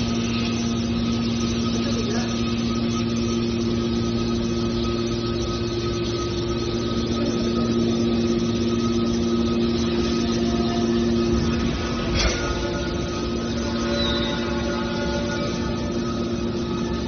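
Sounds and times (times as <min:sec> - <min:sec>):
industrial machinery humming: 0:00.0 - 0:17.0.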